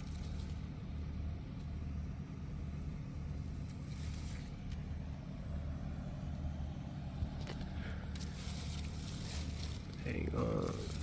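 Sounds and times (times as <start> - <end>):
low mechanical motor hum: 0.0 - 11.0.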